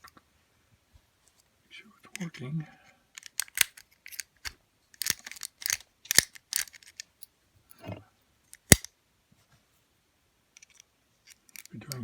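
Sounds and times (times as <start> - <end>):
padlock metallic clicks: 3.2 - 7.3, 8.6 - 8.9.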